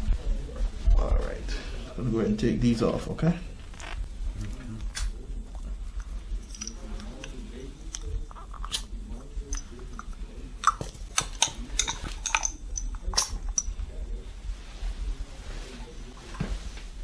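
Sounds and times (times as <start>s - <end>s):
suction cups clicking and popping: 3.6s - 13.8s.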